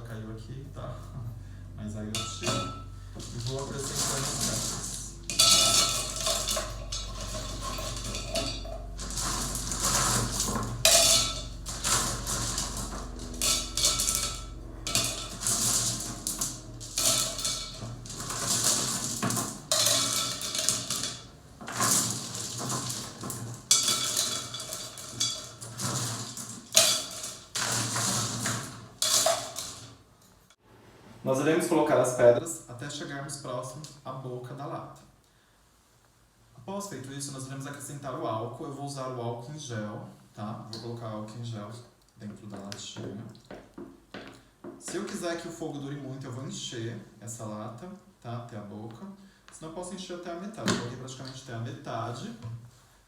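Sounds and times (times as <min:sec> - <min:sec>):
stones clattering against tin: 0:02.2 - 0:30.0.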